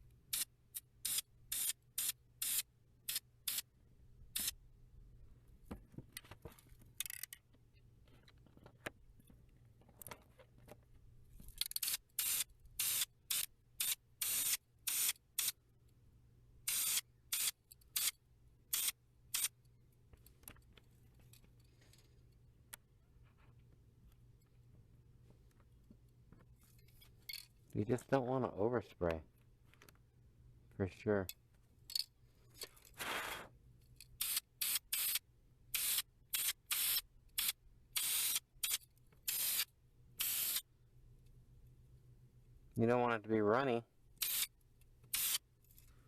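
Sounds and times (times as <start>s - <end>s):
aerosol spray can hissing bursts: 0.3s - 3.6s, 34.2s - 40.6s, 45.1s - 45.4s.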